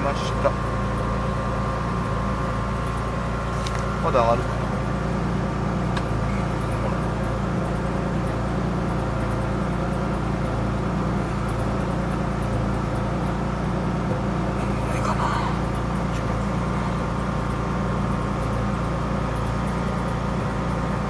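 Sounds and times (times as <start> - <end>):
air compressor running: 0.0 - 21.0
truck engine idling: 0.0 - 21.0.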